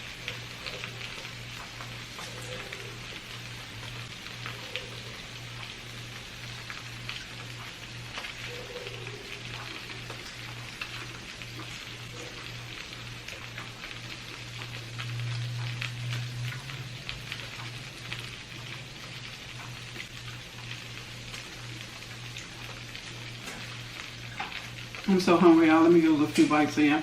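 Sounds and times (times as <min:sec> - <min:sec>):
low electrical hum: 0:00.0 - 0:27.0.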